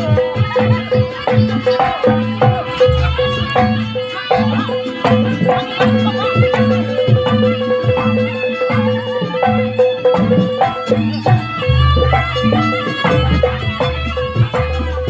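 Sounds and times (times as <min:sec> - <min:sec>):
drums beating fast rhythm: 0:00.0 - 0:15.0
wavering high melody: 0:00.0 - 0:15.0.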